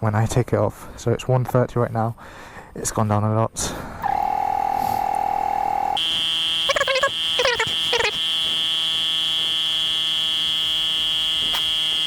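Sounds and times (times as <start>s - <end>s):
electronic tone: 4.1s - 12.0s
warbling chirps: 6.6s - 8.2s.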